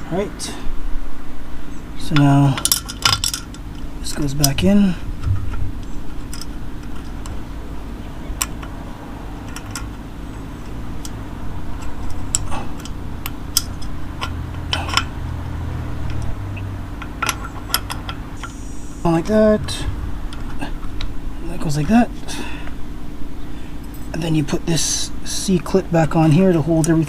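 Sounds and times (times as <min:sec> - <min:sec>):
steady low hum: 0:00.0 - 0:25.6
metal parts clinking: 0:02.5 - 0:04.6, 0:05.3 - 0:07.2, 0:11.8 - 0:15.1.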